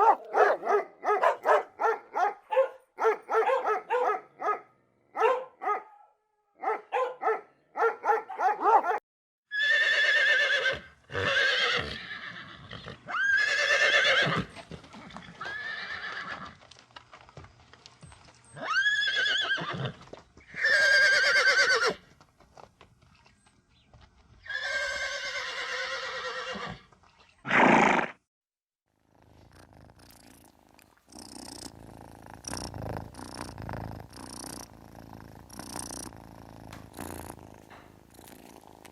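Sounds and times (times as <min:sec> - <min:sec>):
short barks: 0:00.0 - 0:09.0
horse whinnying: 0:09.5 - 0:16.6, 0:18.6 - 0:22.0, 0:24.4 - 0:28.2
rough fast ticking: 0:29.0 - 0:38.9.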